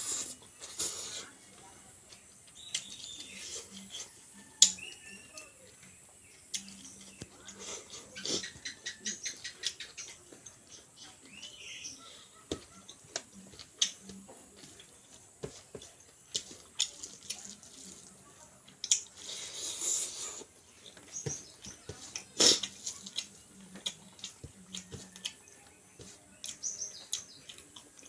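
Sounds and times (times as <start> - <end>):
person chewing food: 0.0 - 28.0.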